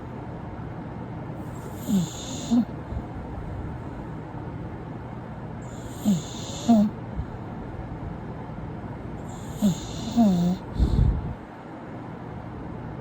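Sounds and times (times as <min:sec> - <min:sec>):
dog snoring: 0:01.4 - 0:03.1, 0:05.6 - 0:07.0, 0:09.2 - 0:11.1.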